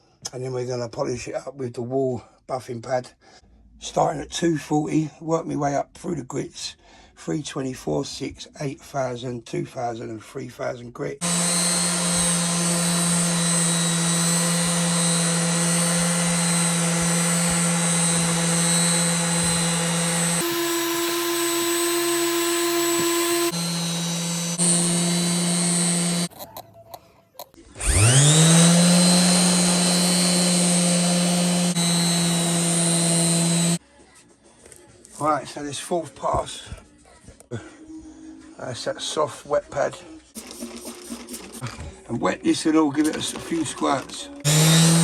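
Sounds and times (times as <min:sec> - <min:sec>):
power sander whining: 0:11.2 - 0:26.3, 0:27.8 - 0:33.8, 0:44.4 - 0:45.0.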